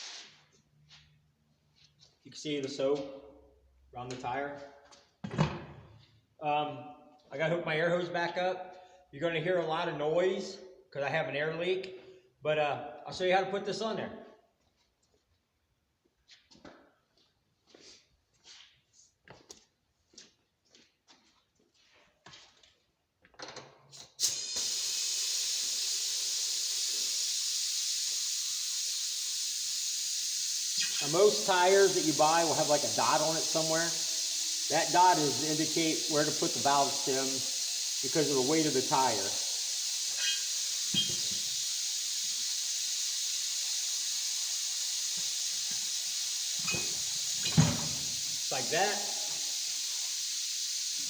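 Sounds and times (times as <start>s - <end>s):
compressed air hissing from leak: 23.9s - 51.0s
knock with faint squeak: 41.0s - 41.2s.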